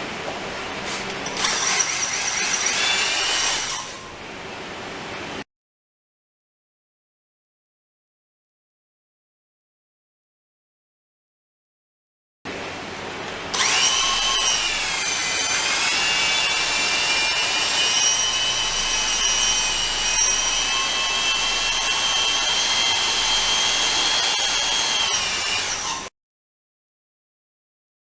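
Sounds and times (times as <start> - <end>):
electric mixer motor whining: 0.8 - 4.0, 13.5 - 26.1.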